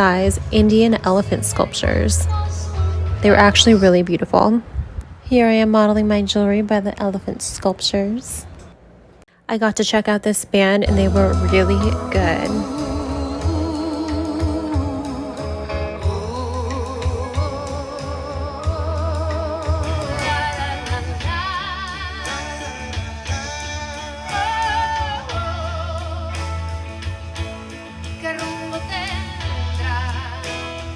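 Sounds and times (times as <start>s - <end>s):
drums: 0.0s - 3.9s, 10.9s - 30.9s
bass line: 0.0s - 4.0s, 10.9s - 30.9s
guitar: 0.0s - 4.0s, 10.9s - 30.9s
singer with vibrato: 0.0s - 4.0s, 10.8s - 26.8s, 28.2s - 30.9s.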